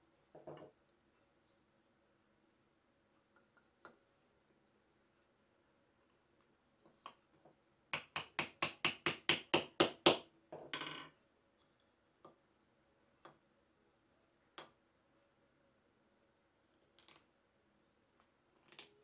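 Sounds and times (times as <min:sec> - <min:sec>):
hammer tapping on wood: 0:07.9 - 0:10.2.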